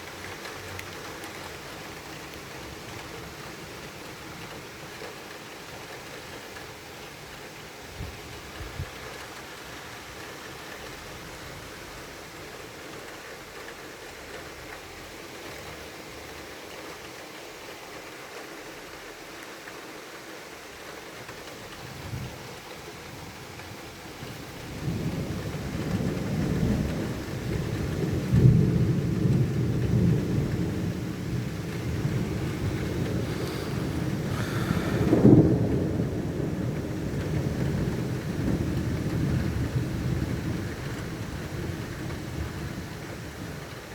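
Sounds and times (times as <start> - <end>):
steady rain: 0.0 - 43.9
rolling thunder rumble: 24.4 - 43.9.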